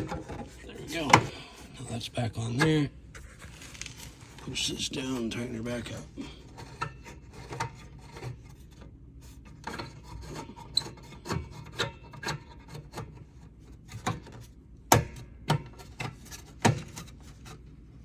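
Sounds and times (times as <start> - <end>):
tool scraping on metal: 2.4 - 13.4.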